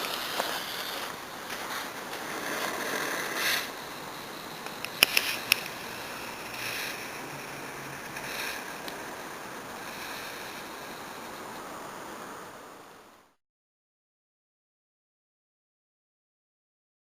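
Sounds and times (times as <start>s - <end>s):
firework crackles: 0.0s - 12.1s
firework spraying hiss: 0.0s - 12.8s.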